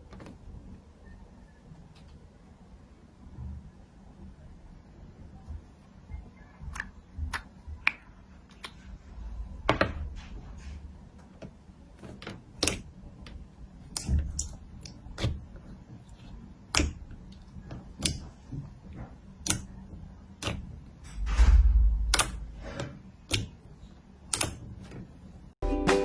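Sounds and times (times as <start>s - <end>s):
slime clicking and popping: 12.6s - 12.9s, 13.8s - 15.4s, 16.7s - 18.4s, 19.4s - 19.8s, 22.0s - 22.5s, 23.2s - 23.7s, 24.3s - 24.6s.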